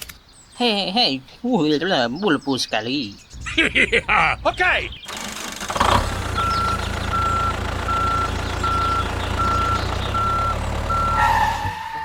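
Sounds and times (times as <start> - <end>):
engine rumbling: 3.3 - 12.0
vehicle reversing alarm beeping: 5.9 - 12.0.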